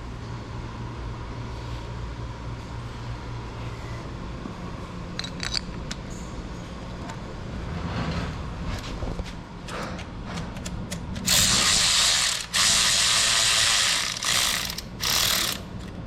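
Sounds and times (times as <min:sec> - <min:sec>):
steady low hum: 0:00.0 - 0:16.0
sharp metallic tool clicks: 0:13.9 - 0:15.6.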